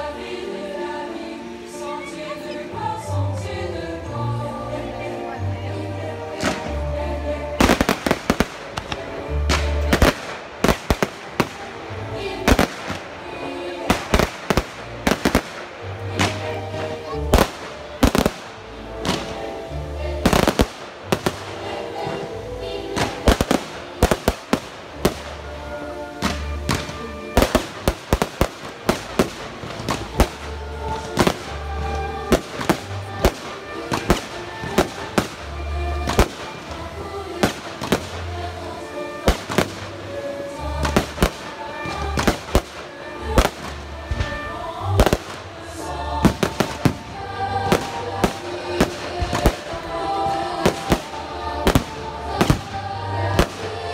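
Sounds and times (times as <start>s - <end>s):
loud music: 2.8s - 53.9s
fireworks bangs: 7.6s - 11.8s, 13.8s - 16.6s, 46.2s - 53.9s.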